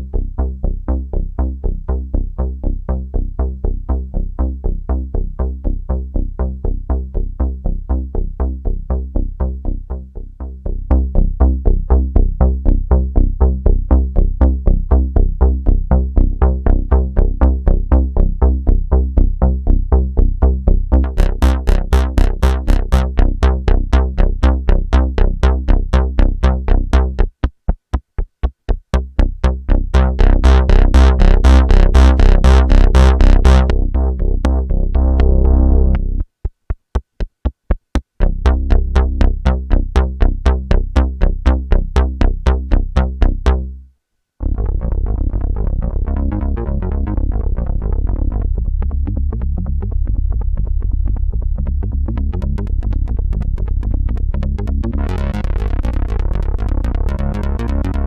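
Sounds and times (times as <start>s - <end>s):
synthesizer pulsing bass pattern: 0.0s - 27.4s, 28.9s - 36.3s, 38.2s - 43.8s, 44.4s - 58.0s.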